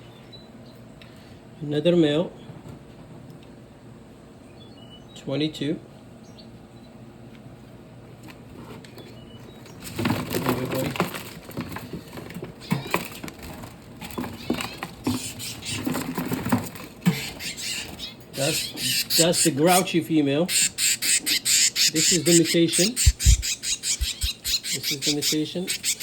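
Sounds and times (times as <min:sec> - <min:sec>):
rustling handling noise: 0:09.8 - 0:15.2
irregular knocks and clicks: 0:23.0 - 0:24.6.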